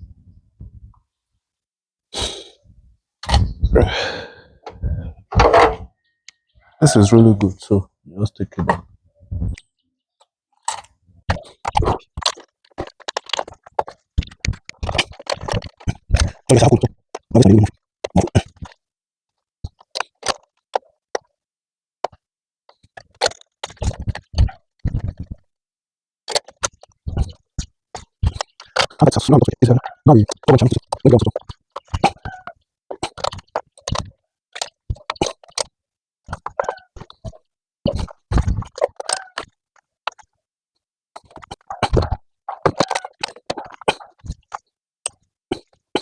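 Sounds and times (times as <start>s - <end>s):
hand tools clicking and knocking: 4.6s - 5.8s.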